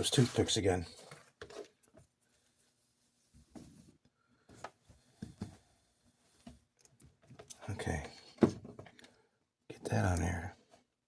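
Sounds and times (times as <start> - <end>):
faint scrapes and taps of small parts: 0.9 - 10.9.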